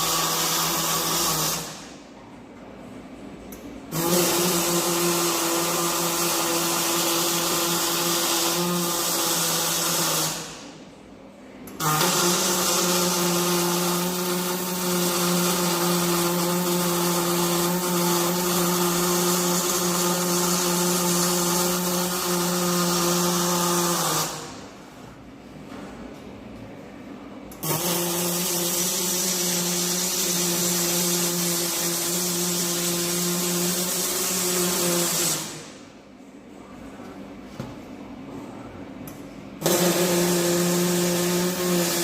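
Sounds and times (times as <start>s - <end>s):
electric power tool running: 11.8s - 24.6s, 39.6s - 42.0s.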